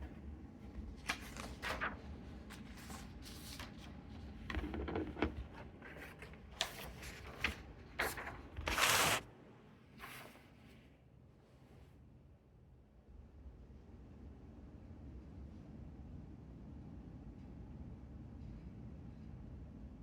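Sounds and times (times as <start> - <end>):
rustles and scrapes: 5.8 - 9.2.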